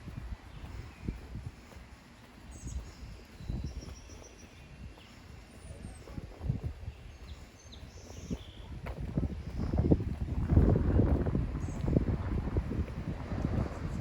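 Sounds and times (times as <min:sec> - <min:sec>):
faint bird chirps: 0:02.2 - 0:08.7
low thumps and rumble: 0:08.7 - 0:14.0.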